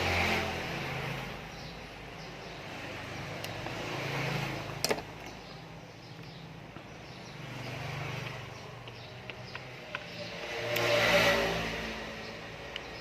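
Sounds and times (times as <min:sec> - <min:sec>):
passing vehicles engine hum: 0:00.0 - 0:13.0
sharp clicks: 0:08.2 - 0:10.9.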